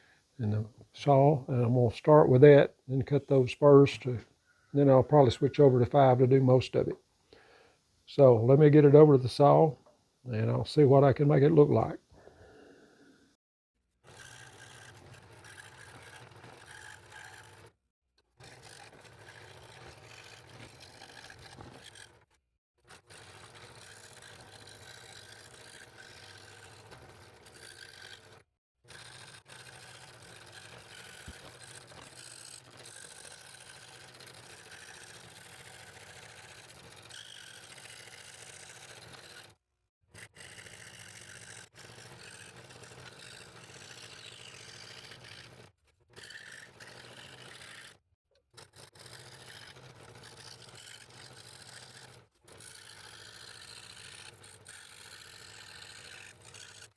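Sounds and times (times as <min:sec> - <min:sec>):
scroll saw motor hum: 0:14.0 - 0:39.6, 0:40.2 - 0:48.0, 0:48.6 - 0:56.9
saw blade scraping wood: 0:14.1 - 0:17.7, 0:18.4 - 0:22.2, 0:22.9 - 0:28.3, 0:28.9 - 0:39.5, 0:40.2 - 0:48.0, 0:48.6 - 0:56.9.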